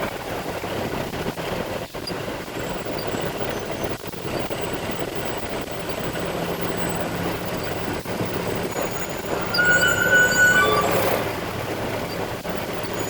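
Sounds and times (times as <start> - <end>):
truck diesel engine running: 5.7 - 13.0.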